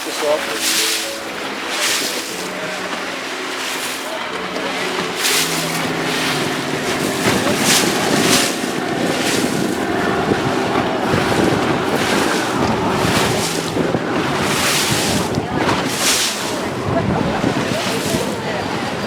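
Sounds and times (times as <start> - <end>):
boat engine hum: 0.0 - 19.0
rushing water: 0.0 - 19.0
water splashing against hull: 0.0 - 19.0
wind buffeting microphone: 4.1 - 19.0.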